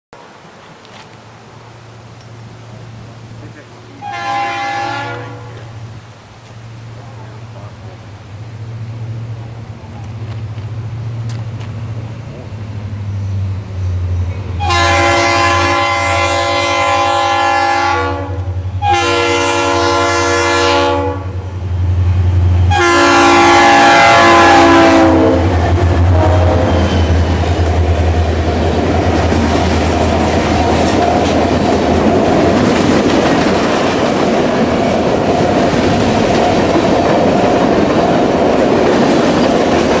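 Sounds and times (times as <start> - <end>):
train wheels rolling: 0.2 - 17.5, 21.2 - 40.0
diesel locomotives rumbling: 0.2 - 40.0
locomotive air horn blasts: 4.0 - 5.8, 14.6 - 21.4, 22.7 - 27.2.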